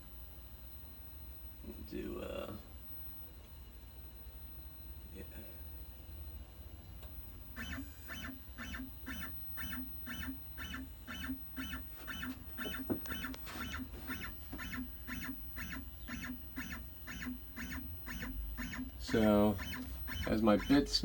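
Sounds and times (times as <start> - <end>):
stepper motors buzzing: 7.1 - 21.0.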